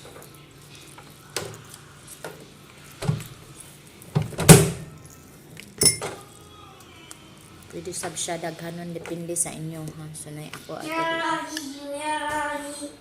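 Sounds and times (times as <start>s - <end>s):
kitchenware knocks and clinks: 5.8s - 6.2s.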